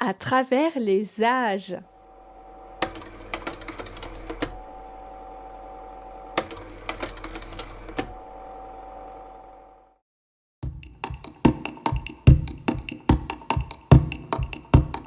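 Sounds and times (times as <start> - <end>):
electric hum with held tone: 1.8 - 10.0
rapid irregular mechanical clicking: 2.8 - 4.6.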